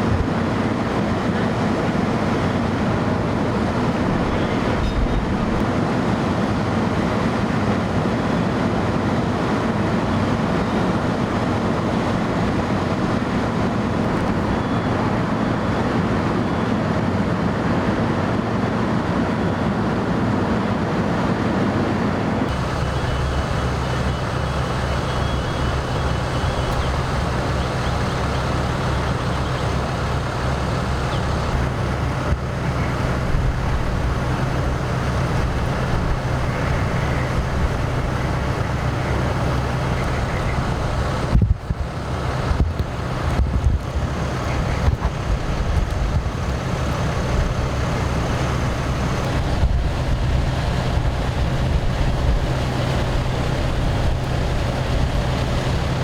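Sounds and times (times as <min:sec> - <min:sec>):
wind noise on microphone: 0:00.0 - 0:19.3, 0:22.4 - 0:56.0
vehicle engines idling: 0:00.0 - 0:56.0
steady low hum: 0:22.4 - 0:56.0.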